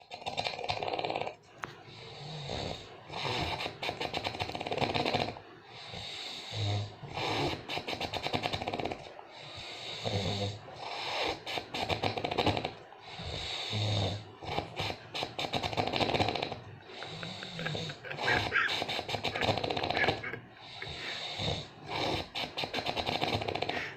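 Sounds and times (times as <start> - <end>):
person snoring loudly rattling: 0.0 - 5.4, 6.2 - 9.1, 9.9 - 23.9.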